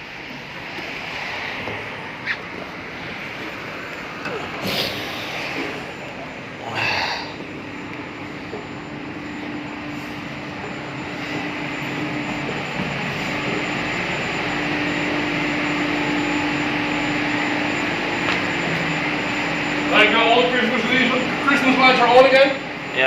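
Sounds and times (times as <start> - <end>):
machinery hum: 0.0 - 23.0
machinery rushing noise: 0.0 - 23.0.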